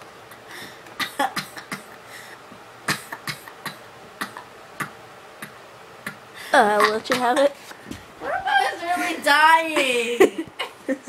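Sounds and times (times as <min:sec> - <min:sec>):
person coughing: 0:01.0 - 0:02.0
throat clicks: 0:03.1 - 0:06.2.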